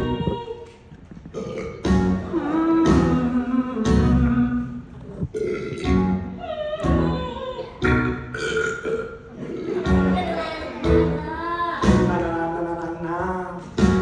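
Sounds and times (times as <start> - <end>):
stage musical accompaniment: 0.0 - 5.0, 5.7 - 8.8, 9.8 - 14.0
comic burps: 1.3 - 1.9, 5.0 - 6.0, 8.3 - 9.9.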